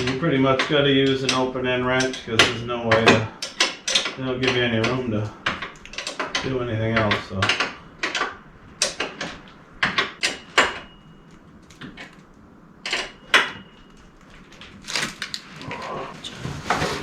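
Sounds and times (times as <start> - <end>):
wrench clinking against metal bolt: 0.0 - 12.2, 12.8 - 14.2.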